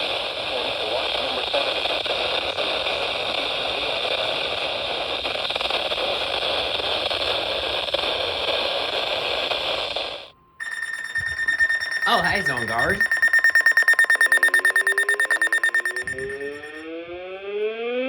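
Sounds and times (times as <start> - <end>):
faint high tone: 10.6 - 16.8.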